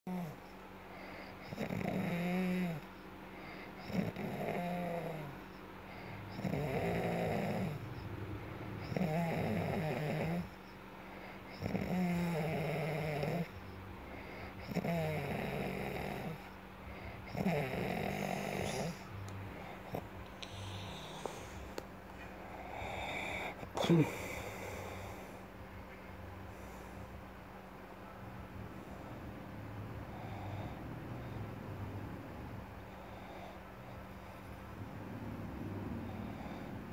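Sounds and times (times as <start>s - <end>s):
person snoring: 1.4s - 2.9s, 6.1s - 7.9s, 8.8s - 10.5s, 11.5s - 13.5s, 14.2s - 21.8s, 22.4s - 25.4s.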